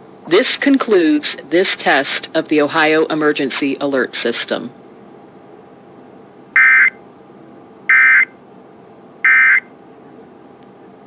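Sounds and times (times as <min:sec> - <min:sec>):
digital data tone bursts: 0:06.6 - 0:07.0, 0:07.9 - 0:08.3, 0:09.3 - 0:09.7.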